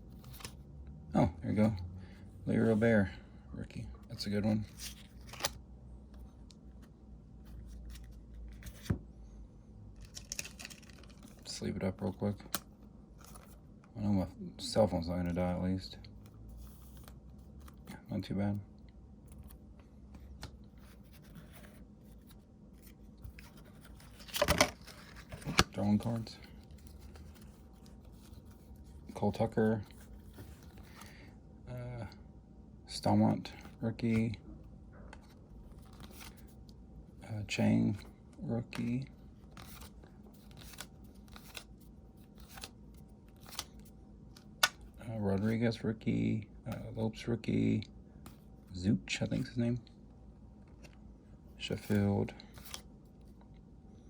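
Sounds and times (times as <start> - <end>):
cards rustling and clicking: 0.0 - 0.6, 4.3 - 9.0, 10.0 - 14.0, 16.1 - 18.3, 19.3 - 31.3, 35.2 - 36.8, 37.8 - 45.6, 51.7 - 53.5
cards clattering: 10.0 - 11.5, 22.8 - 28.7, 39.5 - 41.7.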